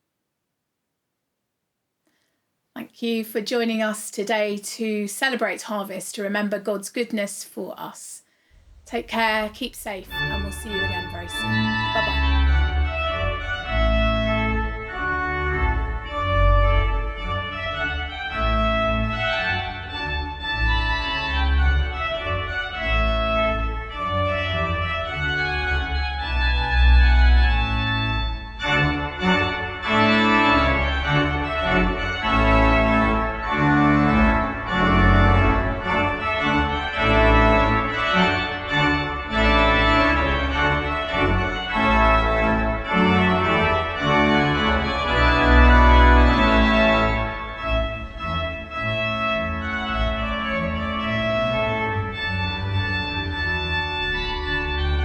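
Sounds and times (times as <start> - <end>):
organ playing full chords: 10.0 - 55.0.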